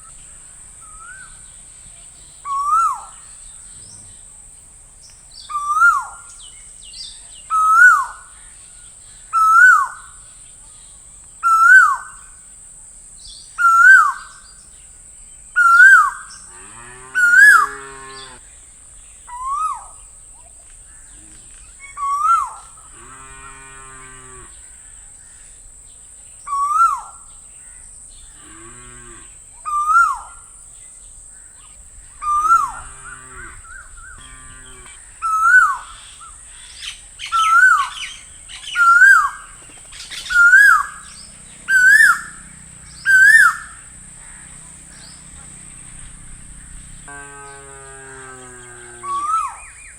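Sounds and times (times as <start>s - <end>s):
low buzzy bird call: 0.0s - 4.4s, 5.4s - 12.5s, 13.3s - 25.6s, 26.5s - 49.9s
bird rising whistled call: 40.0s - 41.1s, 43.0s - 43.8s.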